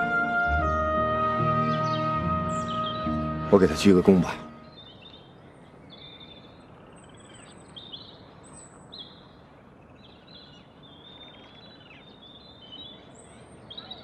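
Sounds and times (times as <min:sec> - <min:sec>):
small birds chirping: 0:01.5 - 0:14.0.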